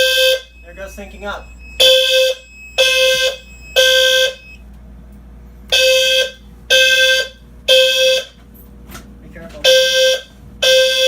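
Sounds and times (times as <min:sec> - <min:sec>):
fire alarm sounder blasts: 0:00.0 - 0:04.6, 0:05.7 - 0:08.4, 0:09.6 - 0:11.0.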